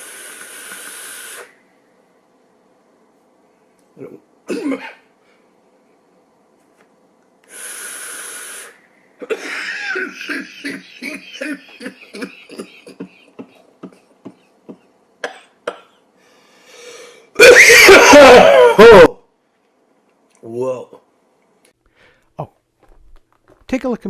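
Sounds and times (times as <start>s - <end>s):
short hiss: 0.0s - 1.6s, 7.5s - 8.8s
man coughing: 4.0s - 5.1s, 9.2s - 16.0s, 17.4s - 19.2s.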